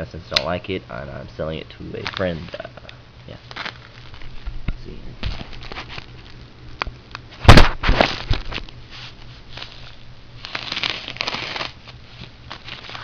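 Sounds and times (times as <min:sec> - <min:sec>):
rustling tearing: 0:03.3 - 0:04.4, 0:05.2 - 0:06.4, 0:07.5 - 0:13.0
packaging crinkling: 0:03.3 - 0:04.5, 0:05.2 - 0:06.8, 0:07.5 - 0:13.0
sharp rip: 0:07.4 - 0:08.3, 0:10.4 - 0:11.8.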